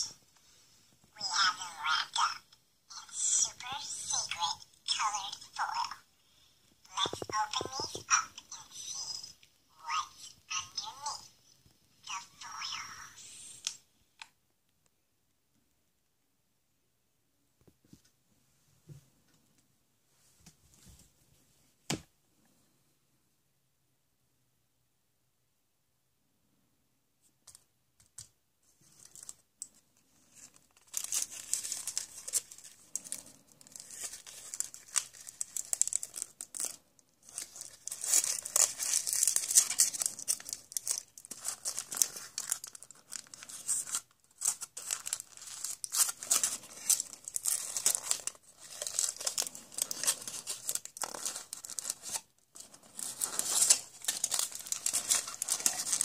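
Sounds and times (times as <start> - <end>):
wrapper crinkling and tearing: 28.8 - 29.4, 30.1 - 56.0.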